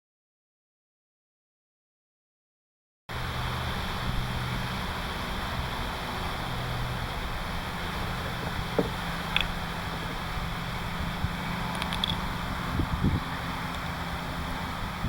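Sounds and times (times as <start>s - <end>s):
low hum: 3.1s - 15.0s
steady rushing noise: 3.1s - 15.0s.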